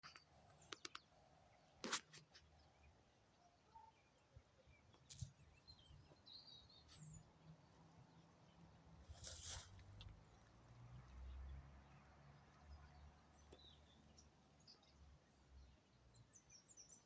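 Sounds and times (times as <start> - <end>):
brief rustle: 1.8 - 2.4, 9.1 - 10.2.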